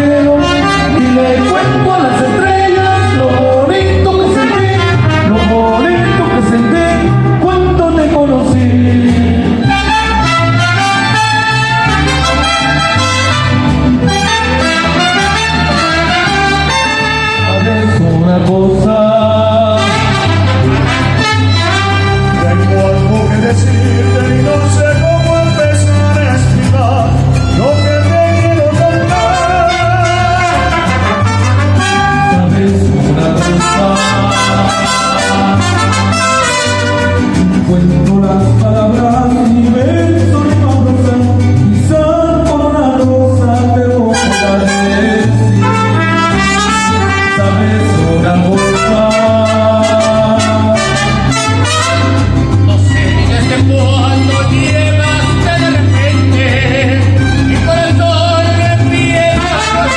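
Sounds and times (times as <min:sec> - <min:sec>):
person singing: 0:00.0 - 0:13.4, 0:14.3 - 0:59.9
bass line: 0:00.0 - 0:59.9
mariachi band playing: 0:00.0 - 0:59.9
trumpets playing melody: 0:00.1 - 0:08.0, 0:09.6 - 0:18.2, 0:19.7 - 0:26.4, 0:27.4 - 0:37.7, 0:44.0 - 0:56.6, 0:59.1 - 0:59.9.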